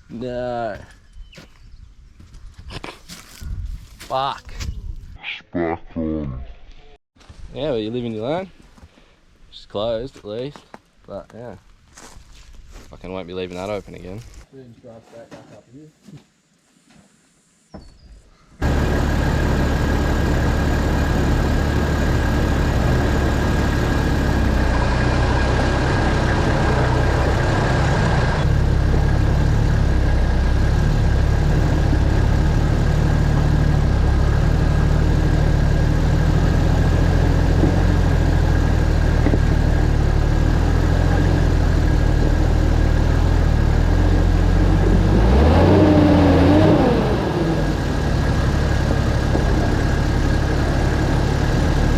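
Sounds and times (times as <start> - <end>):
diesel engine driving: 18.6 - 51.9.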